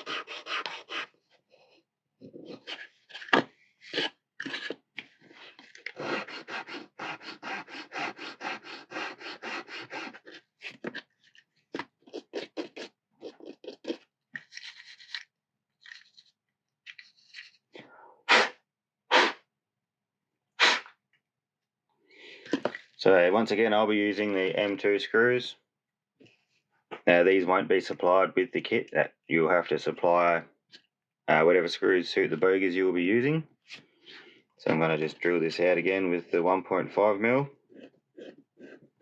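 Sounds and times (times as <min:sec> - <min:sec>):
file scraping plastic: 0:00.0 - 0:15.3, 0:37.6 - 0:39.0.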